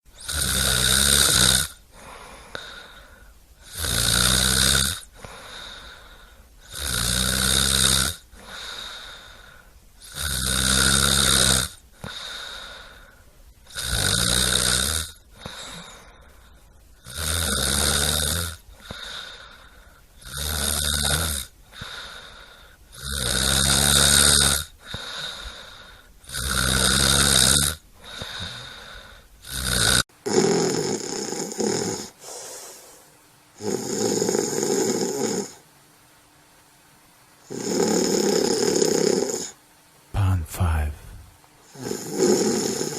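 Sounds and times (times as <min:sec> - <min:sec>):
loud snoring: 0:00.2 - 0:01.8, 0:03.6 - 0:05.8, 0:06.7 - 0:09.2, 0:10.0 - 0:12.4, 0:13.7 - 0:16.0, 0:17.0 - 0:19.4, 0:20.2 - 0:22.2, 0:22.9 - 0:25.5, 0:26.2 - 0:33.0, 0:33.6 - 0:35.6, 0:37.4 - 0:39.6, 0:41.2 - 0:42.9
quiet breaths: 0:01.7 - 0:04.1, 0:05.0 - 0:07.2, 0:08.2 - 0:10.4, 0:11.8 - 0:14.0, 0:15.1 - 0:17.2, 0:18.6 - 0:20.3, 0:21.5 - 0:23.4, 0:24.7 - 0:26.6, 0:27.8 - 0:29.6, 0:31.2 - 0:35.7, 0:40.2 - 0:42.9.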